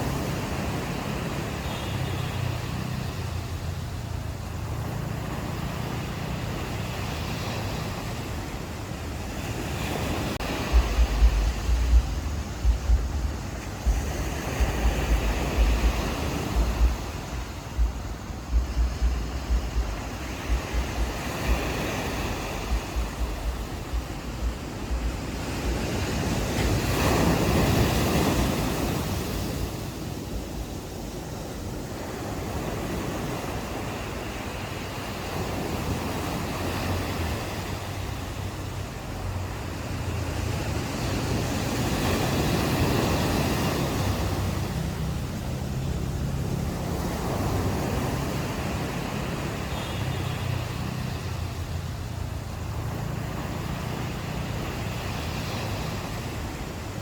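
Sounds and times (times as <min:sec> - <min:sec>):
small ocean waves on beach: 0:00.0 - 0:57.0
wind buffeting microphone: 0:03.2 - 0:57.0
low steady hum: 0:10.8 - 0:21.2.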